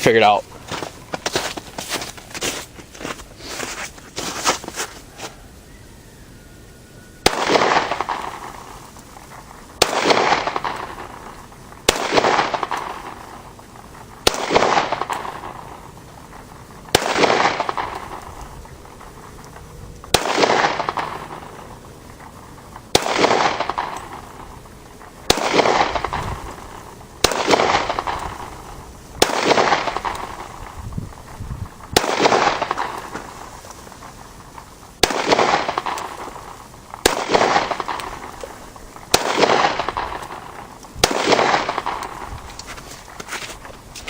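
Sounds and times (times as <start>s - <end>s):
pistol shots with echo: 7.2s - 8.8s, 9.8s - 13.5s, 14.2s - 22.2s, 22.8s - 30.8s, 32.0s - 33.6s, 34.5s - 42.4s.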